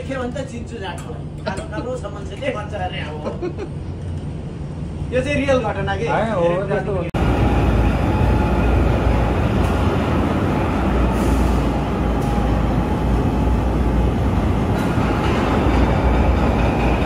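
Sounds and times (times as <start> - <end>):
heavy machinery rumbling: 7.2 - 17.0.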